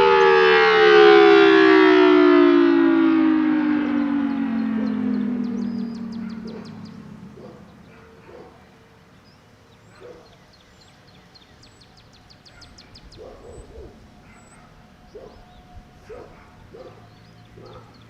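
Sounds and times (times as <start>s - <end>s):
birds chirping: 0.0s - 18.0s
short low bird calls: 3.9s - 10.7s
bird trill: 4.0s - 8.6s.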